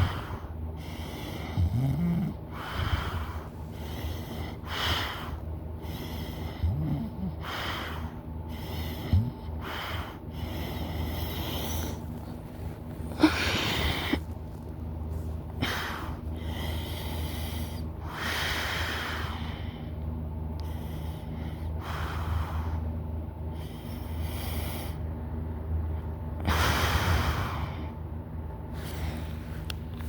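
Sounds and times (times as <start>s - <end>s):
person snoring: 0.0s - 12.1s.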